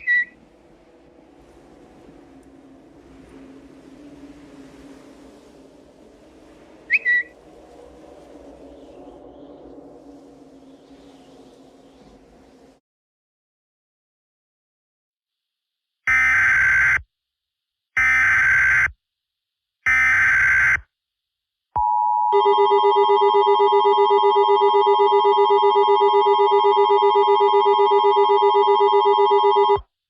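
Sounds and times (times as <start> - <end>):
shrill pulsing alarm tone: 22.3 - 29.8.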